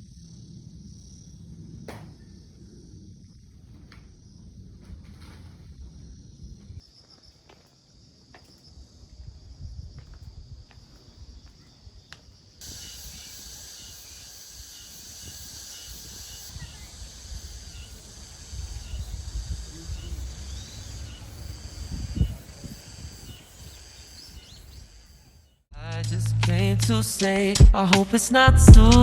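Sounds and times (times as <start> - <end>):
insect chorus trilling: 0.0 - 25.7
dull thump: 1.8 - 2.4.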